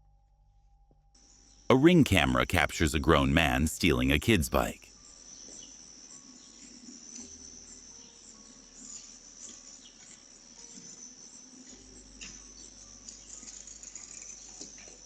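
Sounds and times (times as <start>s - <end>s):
crickets trilling: 4.9s - 15.0s.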